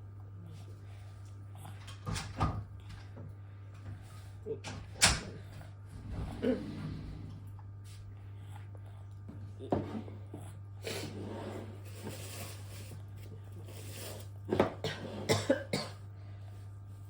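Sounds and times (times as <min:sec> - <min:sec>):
person coughing: 0:14.6 - 0:16.0.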